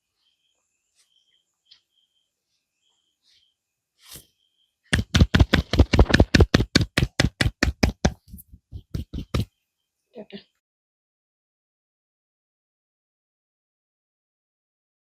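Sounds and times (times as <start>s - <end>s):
hands striking head in massage: 4.9s - 9.5s.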